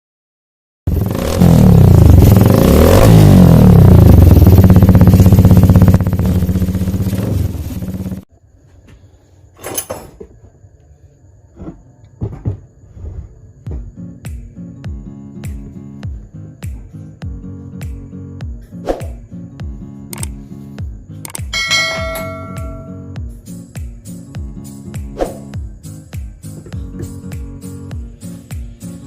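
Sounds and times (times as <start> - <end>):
motorcycle engine revving: 0.9 - 8.2.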